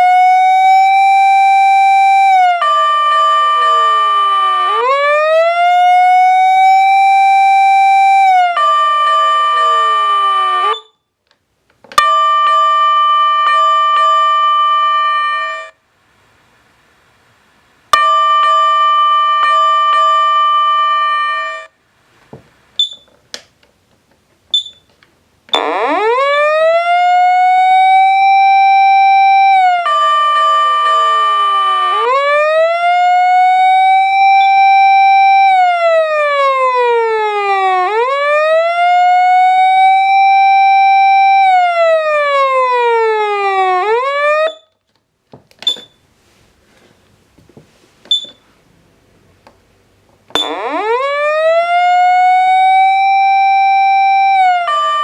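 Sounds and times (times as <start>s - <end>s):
electronic siren wailing: 0.0s - 11.0s, 25.5s - 44.7s, 50.3s - 55.0s
two-note siren tone: 0.0s - 11.0s, 25.5s - 44.8s, 50.3s - 55.0s
short high beeps: 22.8s - 23.1s, 24.6s - 24.9s, 48.1s - 48.4s.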